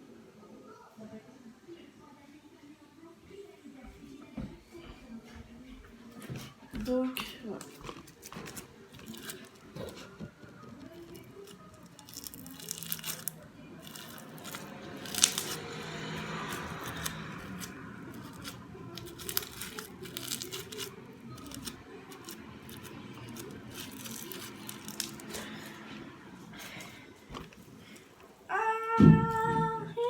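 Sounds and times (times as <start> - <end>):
slime crackling and popping: 7.8 - 10.0, 10.8 - 25.8.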